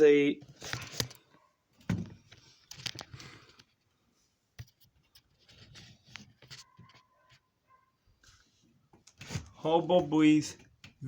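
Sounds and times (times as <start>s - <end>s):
handling rustling clicks and taps: 0.4s - 3.9s.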